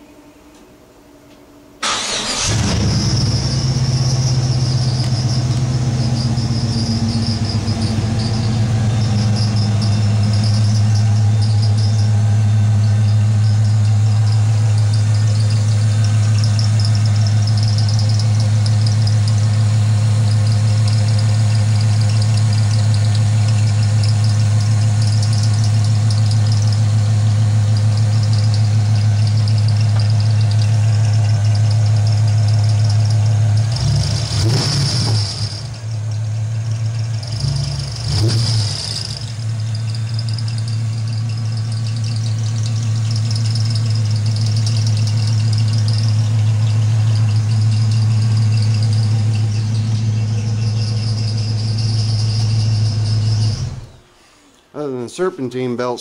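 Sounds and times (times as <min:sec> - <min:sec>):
car engine idling: 0:01.8 - 0:54.3
belt squeaking: 0:36.8 - 0:54.1.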